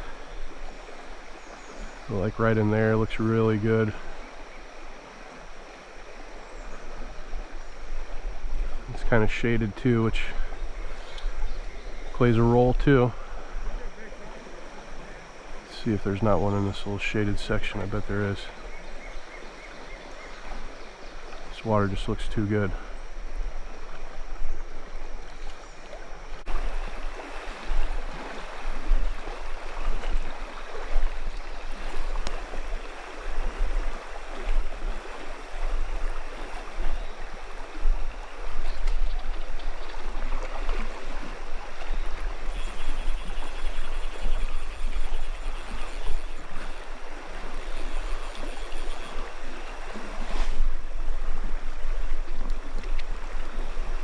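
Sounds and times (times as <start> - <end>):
stream gurgling over rocks: 0.0 - 18.6, 20.2 - 54.0.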